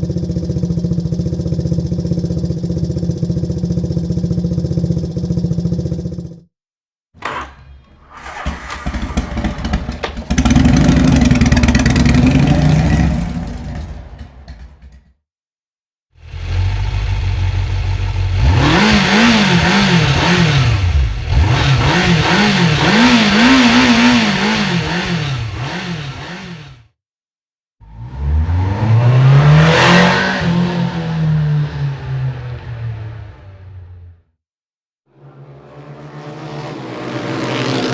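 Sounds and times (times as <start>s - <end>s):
motorcycle engine: 0.0s - 6.5s, 7.2s - 15.2s, 16.2s - 27.0s, 35.1s - 37.9s
motorcycle engine revving: 0.0s - 6.5s, 8.1s - 15.1s, 16.2s - 27.0s, 27.8s - 34.0s, 35.1s - 37.9s.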